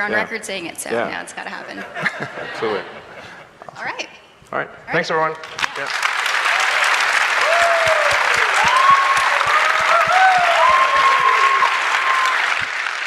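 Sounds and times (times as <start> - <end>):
audience applauding: 5.4 - 13.0.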